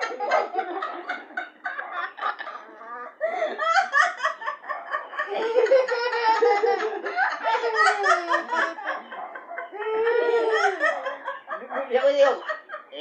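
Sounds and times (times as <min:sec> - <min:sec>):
people laughing: 0:00.0 - 0:13.0.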